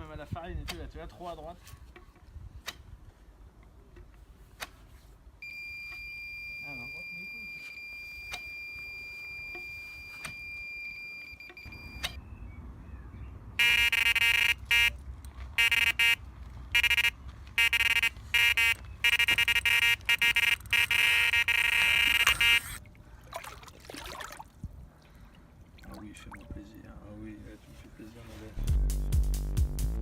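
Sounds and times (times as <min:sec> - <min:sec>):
electronic bite alarm beeping: 0:05.4 - 0:12.2, 0:13.6 - 0:15.0, 0:15.6 - 0:16.2, 0:16.8 - 0:22.8.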